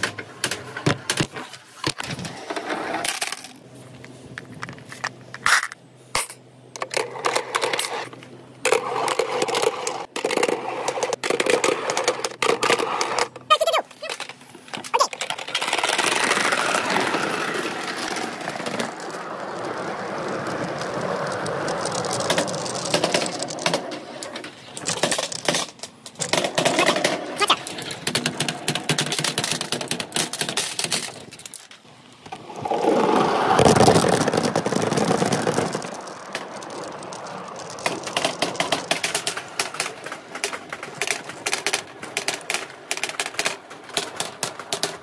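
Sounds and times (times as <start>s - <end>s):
balls clattering in bamboo tubes: 4.4s - 45.0s.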